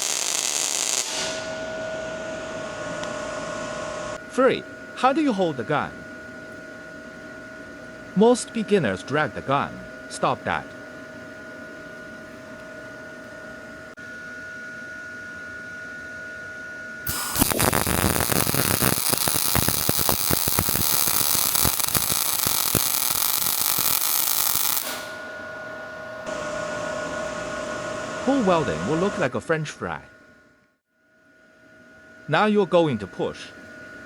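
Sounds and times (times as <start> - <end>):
welding arc crackling and sizzling: 0.0 - 1.6, 17.1 - 25.3
electrical hum with whine: 0.0 - 34.0.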